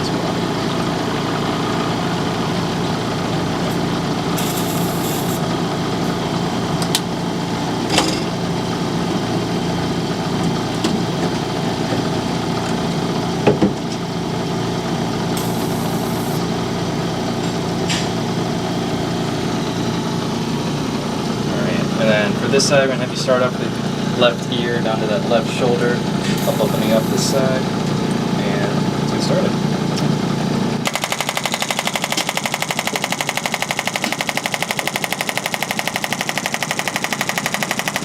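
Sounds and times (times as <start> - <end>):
compressor running: 0.0 - 38.0
applicator pulsing rapidly: 4.3 - 5.4, 15.4 - 16.4, 30.8 - 38.0.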